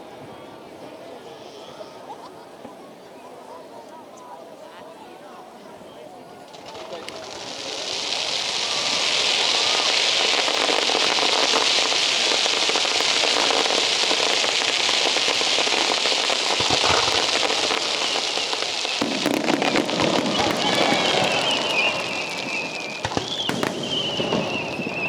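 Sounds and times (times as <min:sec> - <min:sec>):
crackling fireworks: 0:06.3 - 0:25.0.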